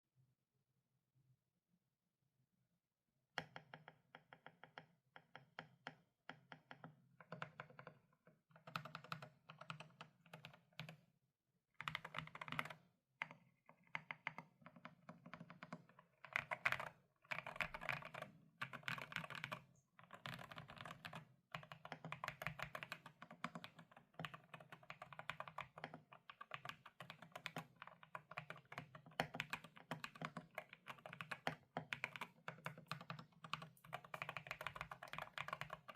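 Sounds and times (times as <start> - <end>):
typing on mechanical keyboard: 7.2 - 11.0, 11.8 - 35.9.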